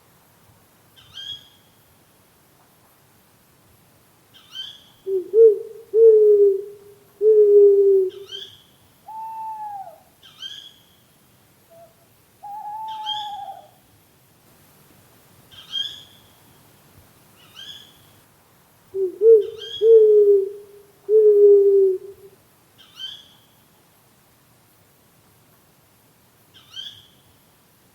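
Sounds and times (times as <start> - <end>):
owls hooting: 5.1 - 8.4, 9.1 - 10.1, 11.7 - 13.8, 19.0 - 22.3.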